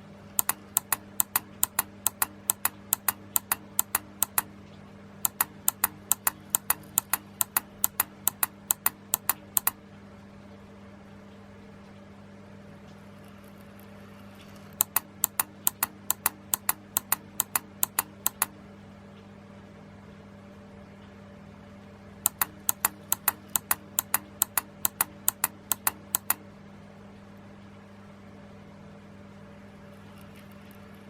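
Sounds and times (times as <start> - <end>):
low electrical hum: 0.0 - 31.0
relays clicking: 0.3 - 4.5, 5.2 - 9.8, 14.8 - 18.5, 22.3 - 26.4.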